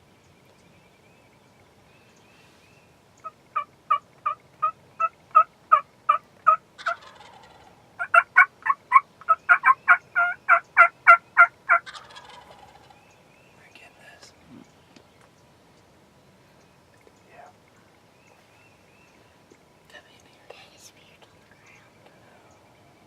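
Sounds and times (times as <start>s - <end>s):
turkey yelps: 3.2s - 13.0s.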